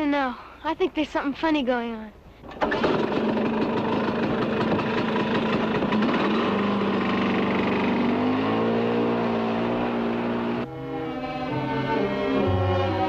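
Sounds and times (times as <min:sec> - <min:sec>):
motor engine running roughly: 0:02.4 - 0:10.6.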